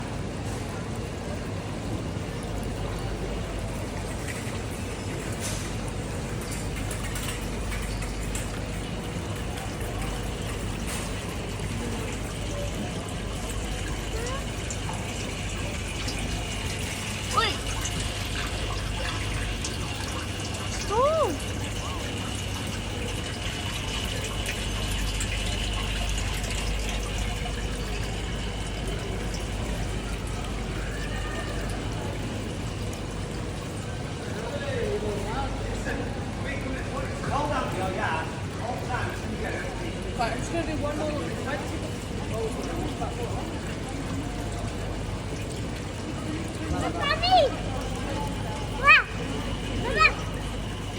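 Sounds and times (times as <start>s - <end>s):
water rushing: 11.3s - 33.0s, 40.7s - 50.9s.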